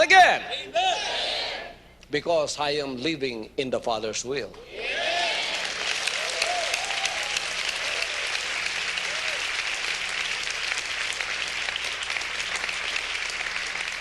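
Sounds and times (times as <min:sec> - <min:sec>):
crowd applauding: 0:05.1 - 0:14.0.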